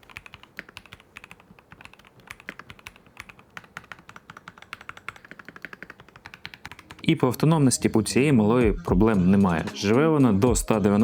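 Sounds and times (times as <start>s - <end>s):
quiet mechanical keyboard typing: 0.0s - 7.2s.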